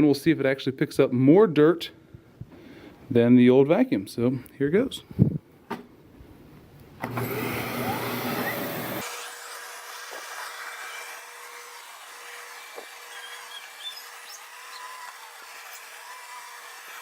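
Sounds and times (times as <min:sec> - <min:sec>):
vacuum cleaner running: 0:07.0 - 0:17.0.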